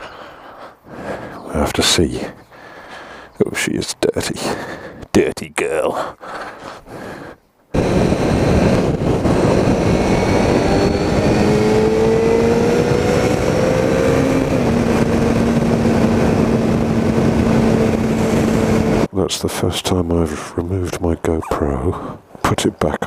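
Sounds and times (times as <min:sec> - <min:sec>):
wind noise: 0:06.9 - 0:19.1
motorcycle engine drone: 0:07.7 - 0:19.1.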